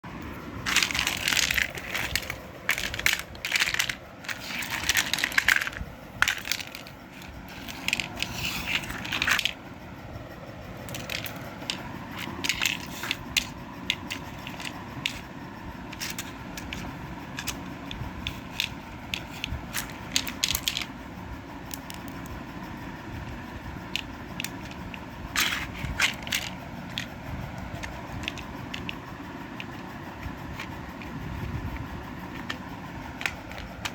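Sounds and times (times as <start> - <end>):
plastic crackling and clicking: 0.6 - 9.6, 10.8 - 15.2, 16.0 - 20.9, 25.4 - 27.1.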